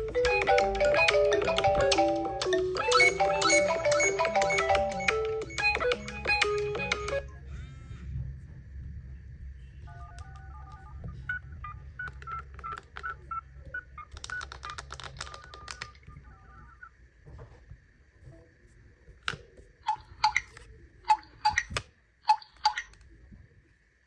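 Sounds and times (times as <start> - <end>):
marimba ringtone: 0.0 - 7.2
phone keypad beeps: 0.0 - 7.3.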